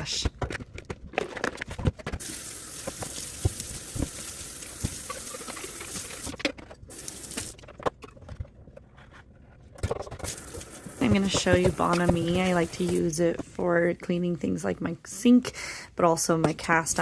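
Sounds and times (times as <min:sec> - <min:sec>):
items knocking and clunking: 0:00.0 - 0:13.6
tap water running into sink: 0:02.2 - 0:07.6.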